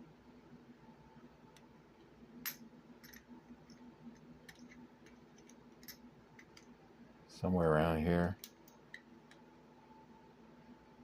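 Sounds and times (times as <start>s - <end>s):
low steady hum: 0.0s - 11.0s
small metal parts clicking: 4.4s - 6.7s.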